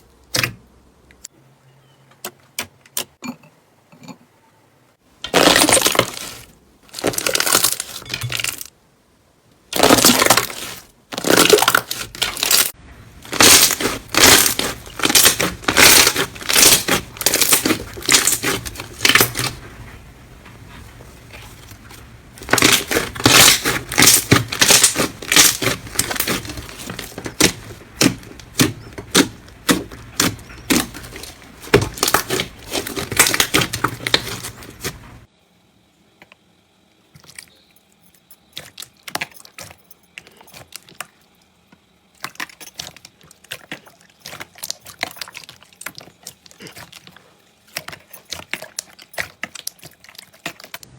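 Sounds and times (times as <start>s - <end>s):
slime crackling and popping: 5.3s - 8.7s, 9.7s - 19.7s, 20.7s - 35.3s.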